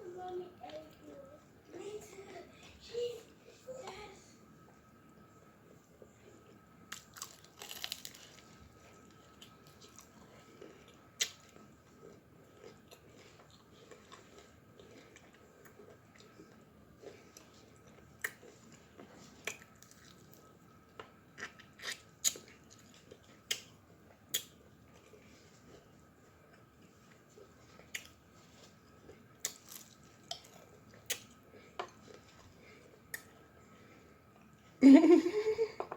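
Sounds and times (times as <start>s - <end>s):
crunchy bite: 6.9s - 8.4s
biting and chewing: 6.9s - 20.4s, 26.4s - 32.5s.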